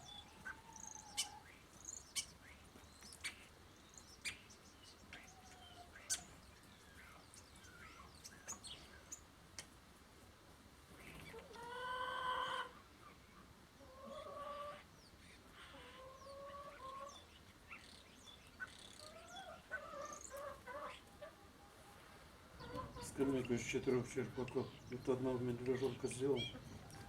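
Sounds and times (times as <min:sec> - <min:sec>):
chickens clucking: 0:00.0 - 0:03.6, 0:04.2 - 0:09.8, 0:10.9 - 0:27.0
chickens calling: 0:00.0 - 0:09.8, 0:10.8 - 0:27.0
small birds chirping: 0:00.0 - 0:10.2, 0:10.8 - 0:27.0.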